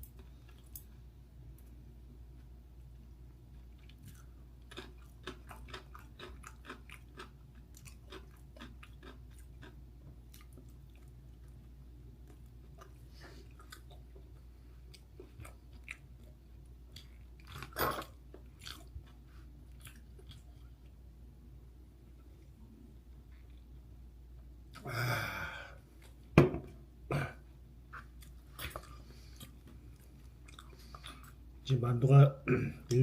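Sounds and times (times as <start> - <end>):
person chewing food: 3.5 - 21.0, 27.8 - 31.5.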